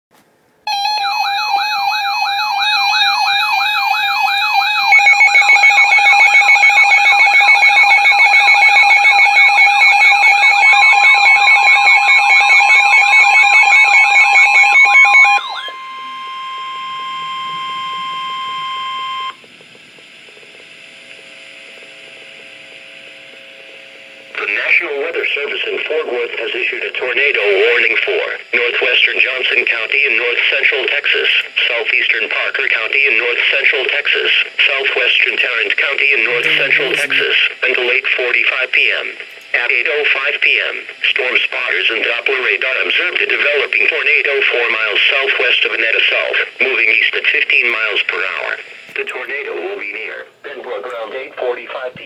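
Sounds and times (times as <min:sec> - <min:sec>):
electronic warbling siren tones: 0:00.7 - 0:20.6, 0:36.3 - 0:37.3
steady alarm tone: 0:00.7 - 0:31.2, 0:35.9 - 0:37.6.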